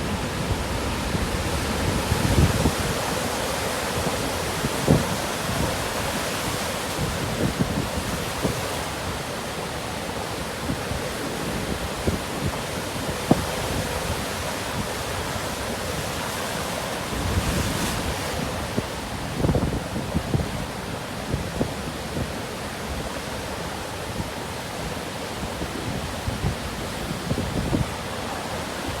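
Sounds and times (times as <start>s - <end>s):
wind buffeting microphone: 0.0s - 16.3s, 25.3s - 29.0s
rough surf breaking: 0.0s - 21.8s.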